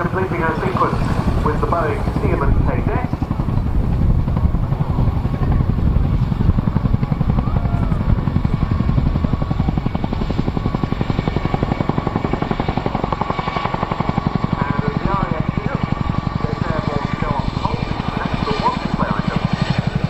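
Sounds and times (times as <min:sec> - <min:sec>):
helicopter rotor blade-slap: 0:00.0 - 0:20.0
turbine whine: 0:00.0 - 0:20.0.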